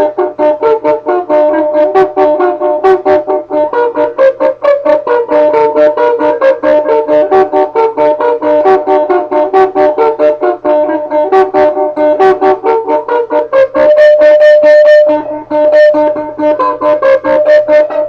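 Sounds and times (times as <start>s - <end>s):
repeated plucked notes: 0.0s - 18.0s
steady held tone: 0.0s - 18.0s.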